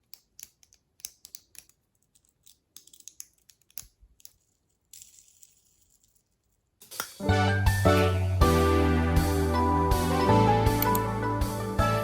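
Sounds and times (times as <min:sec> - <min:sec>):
small plastic parts clicking: 0:00.0 - 0:07.2.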